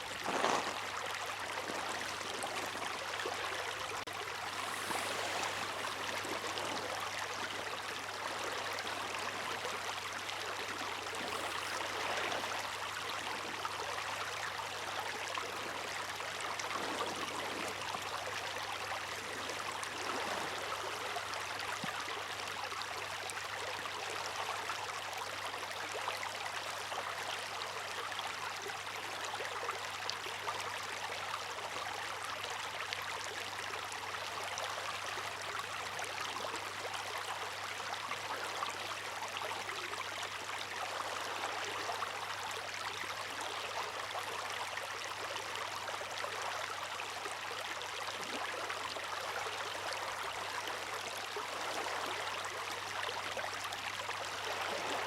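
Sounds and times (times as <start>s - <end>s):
water rushing and splashing: 0.0s - 21.6s.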